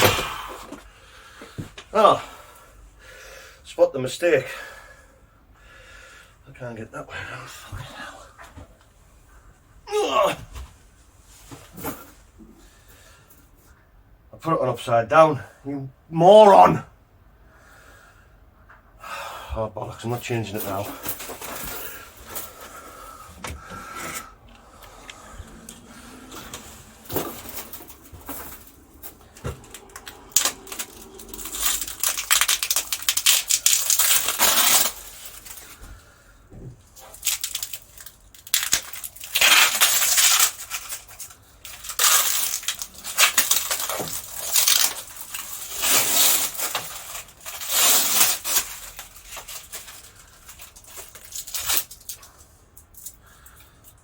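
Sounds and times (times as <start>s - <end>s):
metal scraping: 20.6s - 35.6s
metal clinking and rattling: 25.6s - 35.7s.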